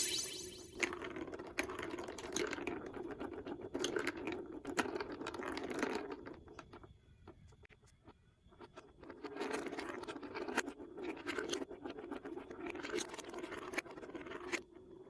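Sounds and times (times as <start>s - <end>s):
ringing sound: 0.0s - 0.8s
marbles rolling through plastic track: 0.8s - 6.9s, 8.9s - 15.0s.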